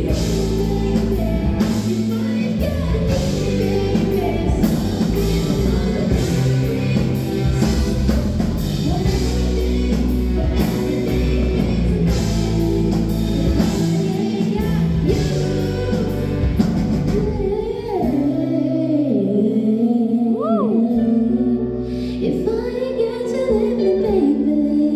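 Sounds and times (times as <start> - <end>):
drum kit: 0.0 - 18.7
rock music: 0.0 - 19.0
guitar: 0.0 - 24.9
person singing: 0.0 - 24.9.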